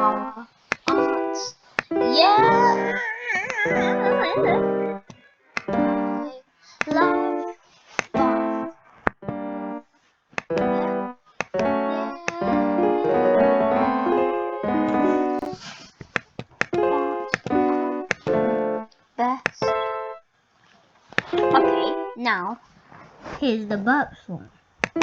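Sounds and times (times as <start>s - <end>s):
electronic keyboard music: 0.0s - 0.3s, 0.9s - 3.0s, 3.6s - 6.3s, 6.9s - 7.6s, 8.2s - 9.8s, 10.5s - 15.6s, 16.8s - 18.9s, 19.6s - 20.2s, 21.3s - 22.2s.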